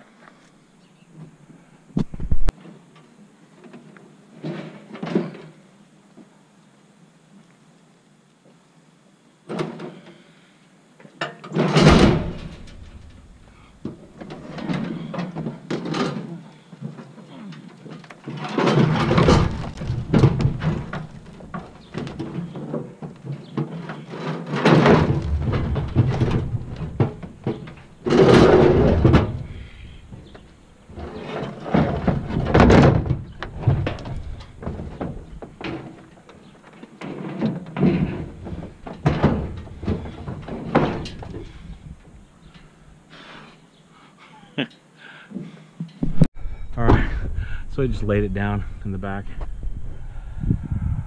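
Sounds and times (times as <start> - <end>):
heavy thuds and knocks: 11.6 - 15.9, 18.5 - 36.2, 37.5 - 42.2, 46.0 - 47.6
metal scraping: 23.9 - 36.1.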